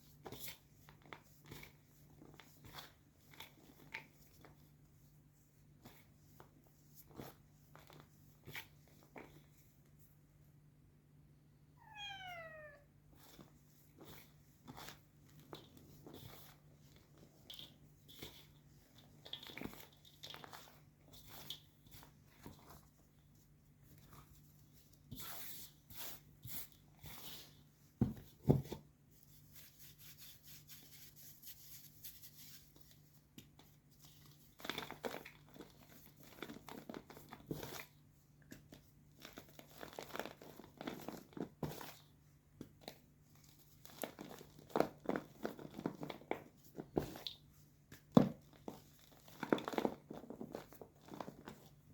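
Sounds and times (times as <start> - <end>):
cat meowing: 11.8 - 12.9.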